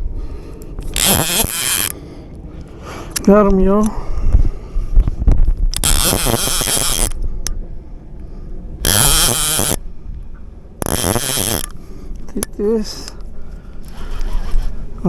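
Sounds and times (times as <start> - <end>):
low hum: 0.0 - 15.0
fishing reel cranking: 0.8 - 2.0, 5.7 - 7.2, 8.8 - 9.8, 10.8 - 11.8.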